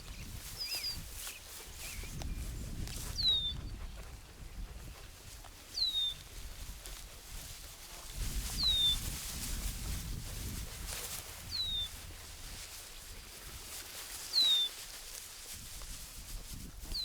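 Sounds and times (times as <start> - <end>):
bird whistling downward-slurred: 14.4 - 14.7.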